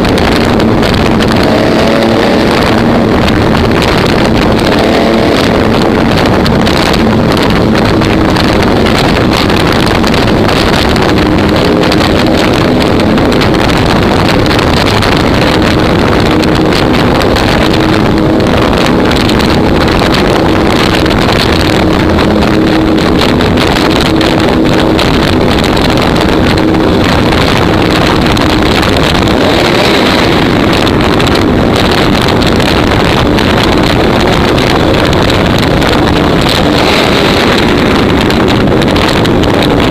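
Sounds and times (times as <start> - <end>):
engine running loud: 0.0 - 39.9
wind buffeting microphone: 0.0 - 39.9.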